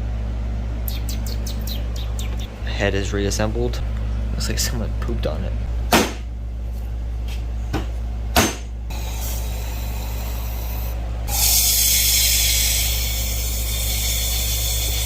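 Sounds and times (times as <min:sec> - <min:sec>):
steady low hum: 0:00.0 - 0:15.0
loud spraying hiss: 0:09.0 - 0:15.0.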